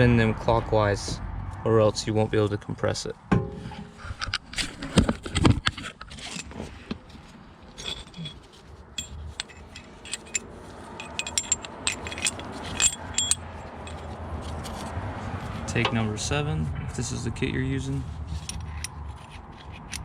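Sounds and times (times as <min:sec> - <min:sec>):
small metal pieces clinking: 0:07.8 - 0:08.4, 0:09.0 - 0:10.4, 0:11.0 - 0:14.1.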